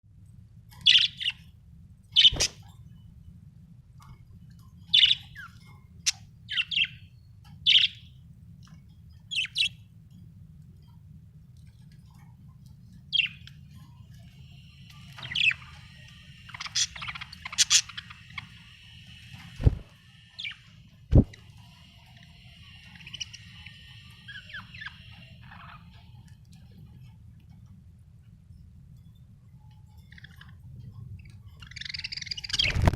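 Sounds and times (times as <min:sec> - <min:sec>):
budgerigar chirping: 0:05.0 - 0:05.5, 0:07.7 - 0:08.0, 0:15.1 - 0:19.2, 0:22.4 - 0:25.9, 0:31.6 - 0:32.8
loud dull thumps: 0:21.1 - 0:21.4.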